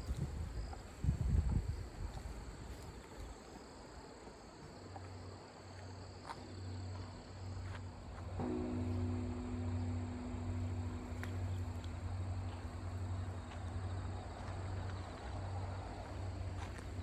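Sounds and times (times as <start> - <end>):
crickets chirring: 0.0 - 17.0
faint low pulsing hum: 4.7 - 17.0
low rumbles: 6.6 - 17.0.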